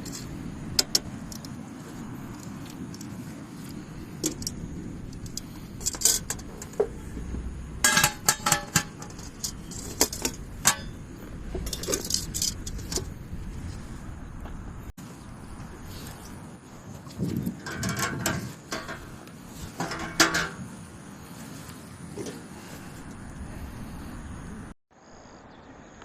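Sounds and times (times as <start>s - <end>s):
metal camping gear clinking: 0.0s - 1.6s, 2.3s - 13.3s, 17.2s - 20.8s.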